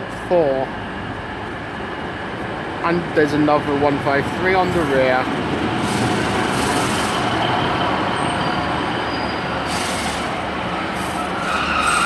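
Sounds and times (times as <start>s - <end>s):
diesel train engines rumbling: 0.0s - 12.0s
train wheels on rail: 0.0s - 12.0s
wheels and brakes squealing: 5.8s - 10.3s, 10.9s - 12.0s.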